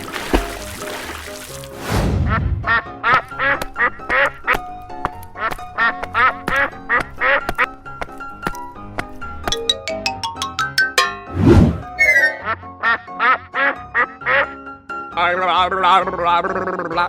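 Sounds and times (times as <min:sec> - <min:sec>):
background music: 0:02.7 - 0:13.0.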